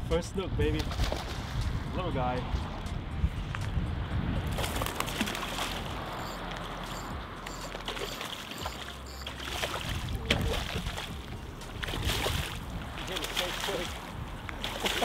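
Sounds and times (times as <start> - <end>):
water sloshing and splashing: 0.8 - 1.7, 4.5 - 15.0
low steady rumble: 8.7 - 13.2.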